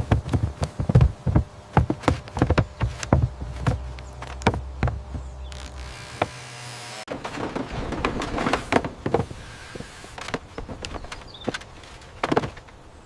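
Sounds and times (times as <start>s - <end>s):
low hum: 0.0s - 9.8s.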